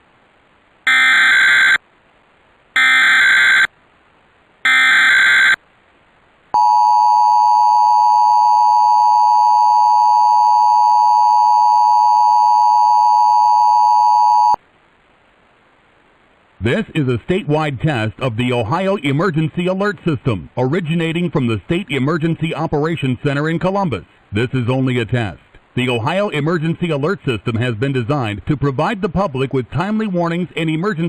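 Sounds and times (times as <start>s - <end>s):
digital data tone bursts: 0.9s - 1.8s, 2.8s - 3.7s, 4.7s - 5.6s.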